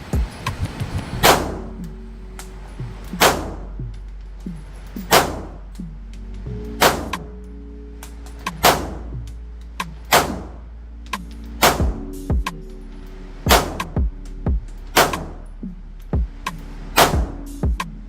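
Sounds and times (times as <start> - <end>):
steady low hum: 0.0 - 18.0
pistol shots: 3.2 - 3.6, 5.1 - 5.5.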